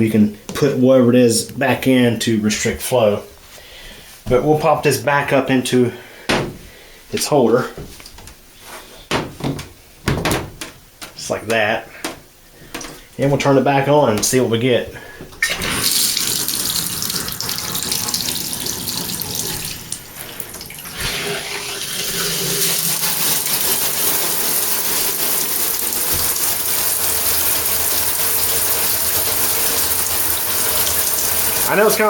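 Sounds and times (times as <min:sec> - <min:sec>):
shower head spraying water: 0:15.4 - 0:32.0.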